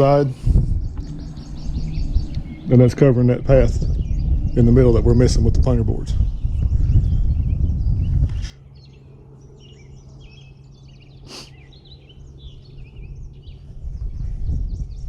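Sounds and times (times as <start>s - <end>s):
loud low rumble: 0.0s - 8.4s
birds chirping and singing: 0.0s - 15.0s
low steady hum: 0.0s - 15.0s.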